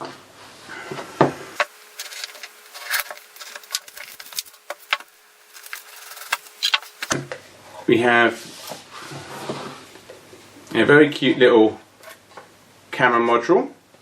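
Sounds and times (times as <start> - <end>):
packaging rubbing and scraping: 1.6 - 7.2.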